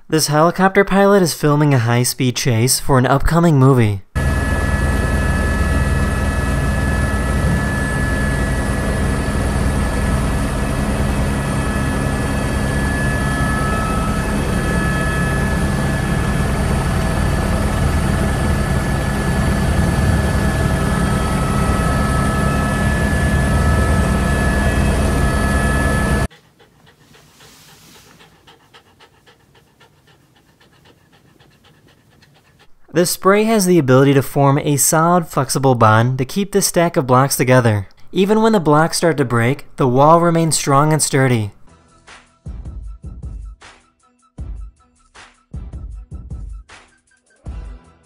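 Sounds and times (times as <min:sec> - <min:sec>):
helicopter engine whine: 0:04.2 - 0:32.8
helicopter rotor noise: 0:04.2 - 0:33.6.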